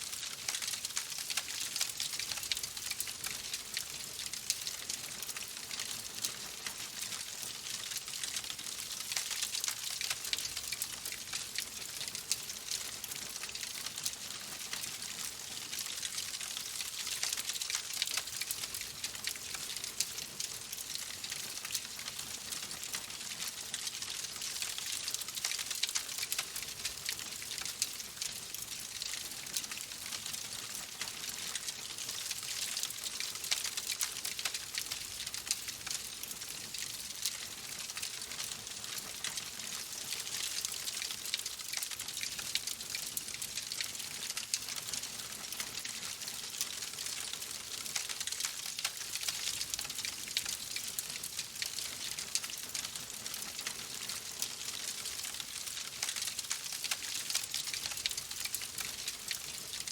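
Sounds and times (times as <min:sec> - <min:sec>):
wood fire crackling: 0:40.2 - 0:44.9.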